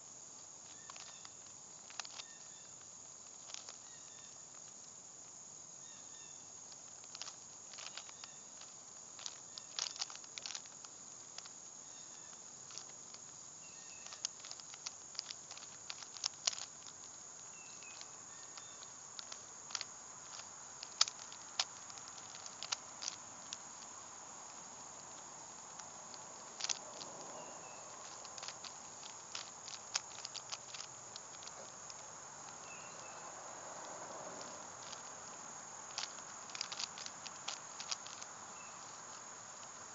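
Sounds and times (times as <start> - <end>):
plastic puzzle cube clicking: 0.7 - 4.8, 6.7 - 23.9, 24.5 - 33.0, 34.4 - 39.7.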